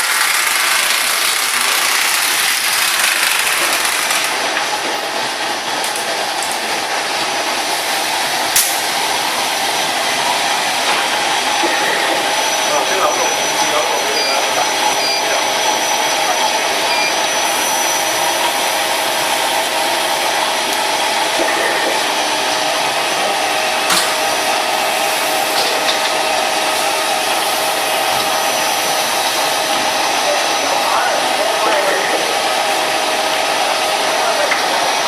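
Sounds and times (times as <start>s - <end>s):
cutting machine motor whir: 0.0s - 4.6s.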